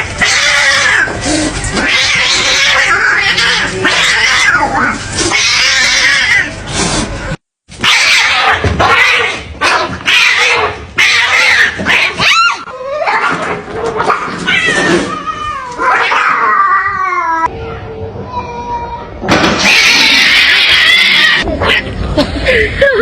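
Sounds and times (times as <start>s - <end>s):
cats yowling: 0.0s - 6.6s, 7.8s - 17.5s, 19.5s - 21.8s.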